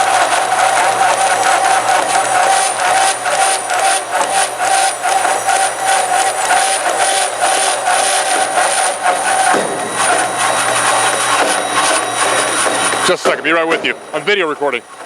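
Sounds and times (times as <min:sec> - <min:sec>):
bandsaw whining: 0:00.0 - 0:15.0
rapid irregular clicks: 0:00.0 - 0:15.0
brief falling tone: 0:09.2 - 0:14.8.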